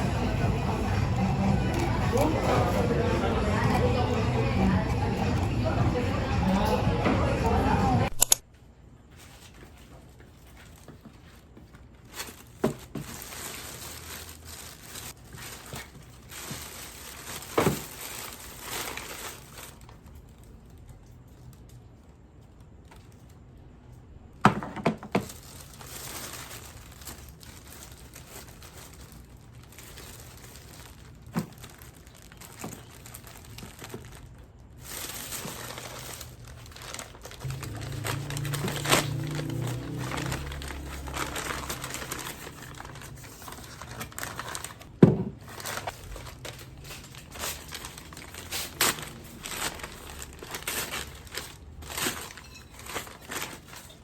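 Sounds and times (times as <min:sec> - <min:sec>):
plastic packaging crinkling: 0:09.2 - 0:23.7, 0:25.0 - 0:54.0
objects set down knocking: 0:24.4 - 0:25.3.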